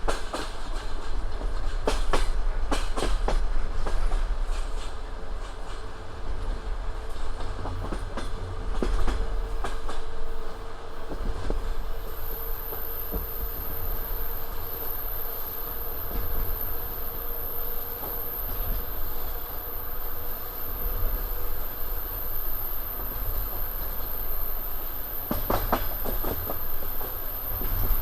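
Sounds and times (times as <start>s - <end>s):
train wheels rumbling: 0.0s - 28.0s
wheels clicking over rail joints: 23.0s - 28.0s.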